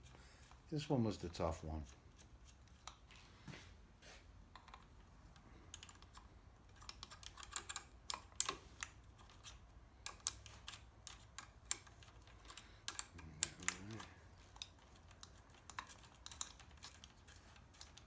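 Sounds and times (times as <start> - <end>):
light clicks and metallic taps: 4.5 - 18.0.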